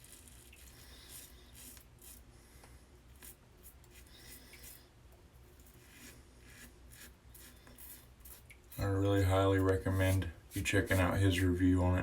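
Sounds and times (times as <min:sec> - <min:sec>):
razor scraping stubble: 0:00.0 - 0:02.3, 0:05.5 - 0:11.5.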